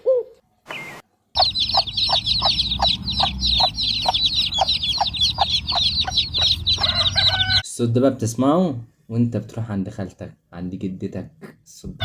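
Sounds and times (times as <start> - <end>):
chicks peeping: 0.7 - 7.6
hen clucking: 1.4 - 7.6.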